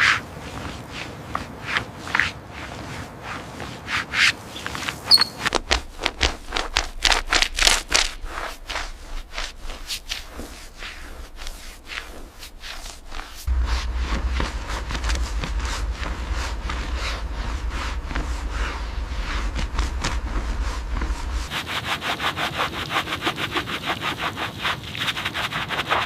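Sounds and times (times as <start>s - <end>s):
rubbing strokes against surface: 0.0s - 26.0s
brief high squeak: 5.1s - 5.5s
steady low hum: 5.5s - 23.2s.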